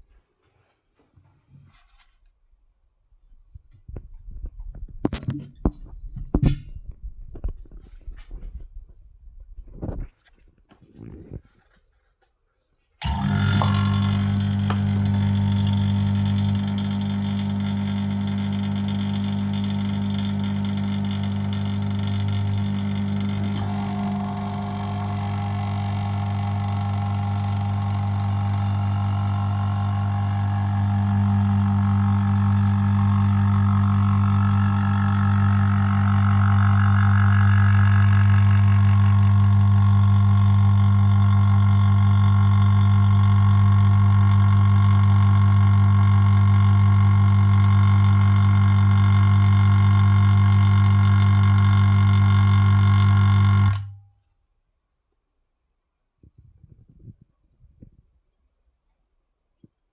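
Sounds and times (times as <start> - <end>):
vacuum pump humming: 13.0 - 54.0.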